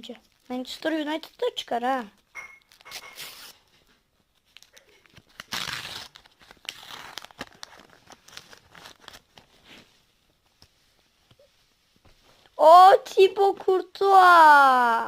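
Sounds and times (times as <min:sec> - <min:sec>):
wrapper crinkling: 0:00.2 - 0:12.6
card pack wrapper tearing: 0:02.7 - 0:03.6, 0:04.6 - 0:09.6
cards rustling and clicking: 0:04.4 - 0:11.0.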